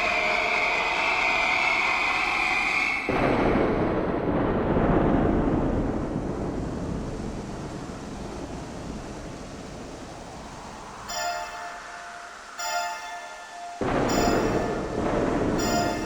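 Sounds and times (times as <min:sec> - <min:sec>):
deep noisy rumble: 0:03.1 - 0:16.0
ringing bell-like tone: 0:11.0 - 0:16.0.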